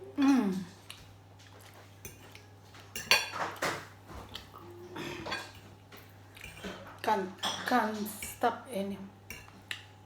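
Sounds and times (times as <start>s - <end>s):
utensils clinking against a dish: 1.6s - 8.6s, 9.3s - 9.9s.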